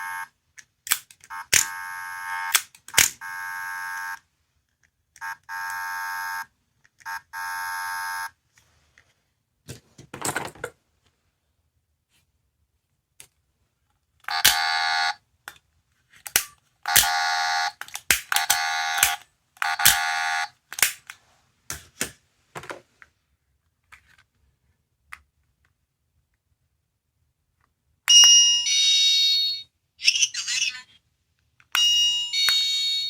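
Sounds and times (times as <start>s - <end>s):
electronic toy buzzer tones: 0.0s - 0.3s, 1.4s - 2.6s, 3.2s - 4.2s, 5.2s - 6.5s, 7.1s - 8.3s, 14.3s - 15.2s, 16.9s - 17.8s, 18.4s - 20.6s
sharp clicks: 17.8s - 20.1s.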